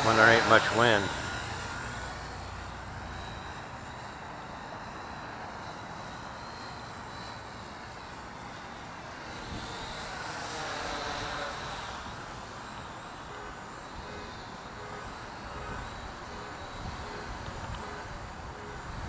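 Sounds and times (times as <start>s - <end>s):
drone motors whining: 0.0s - 19.0s
wind noise: 15.4s - 19.0s.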